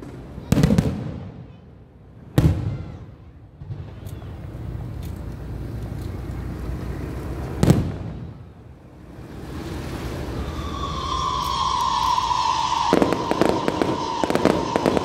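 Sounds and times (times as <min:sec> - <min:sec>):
firework whistle: 0:09.9 - 0:15.0.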